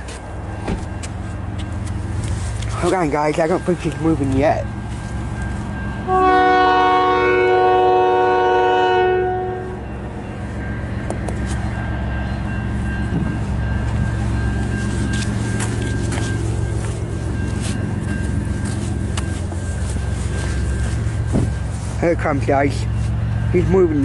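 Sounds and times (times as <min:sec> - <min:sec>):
diesel locomotive rumble: 0:00.0 - 0:24.0
locomotive air horn: 0:06.0 - 0:09.9.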